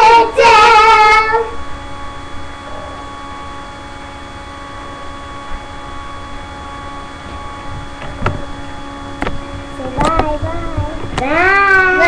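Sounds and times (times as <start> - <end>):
background hum with tones: 0.0 - 12.0.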